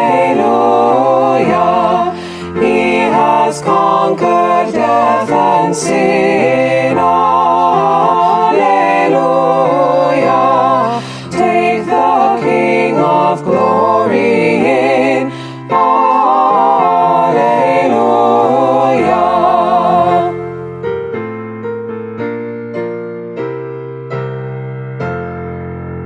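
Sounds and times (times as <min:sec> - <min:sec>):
voices singing a hymn: 0:00.0 - 0:20.5
keyboard chords: 0:00.0 - 0:26.0
slow piano notes: 0:00.0 - 0:26.0.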